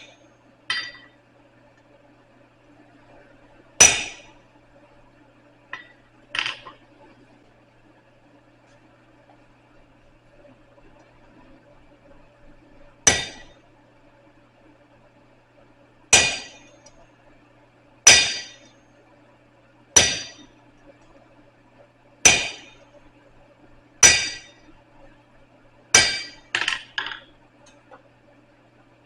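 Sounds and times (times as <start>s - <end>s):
hammer striking steel on anvil: 0.7s - 1.1s, 3.8s - 4.3s, 13.1s - 13.5s, 16.1s - 16.7s, 18.1s - 18.6s, 20.0s - 20.5s, 22.3s - 22.8s, 24.0s - 24.6s, 26.0s - 27.2s.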